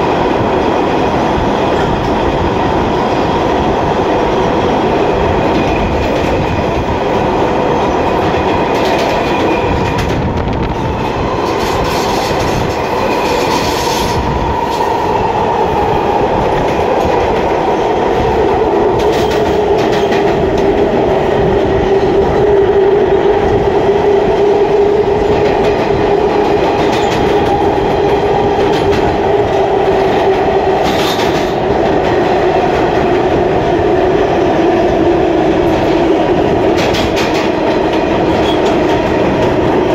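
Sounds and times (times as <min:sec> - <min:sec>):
subway car rumbling: 0:00.0 - 0:39.9
wheels clacking over rail joints: 0:18.9 - 0:21.0, 0:35.6 - 0:39.9.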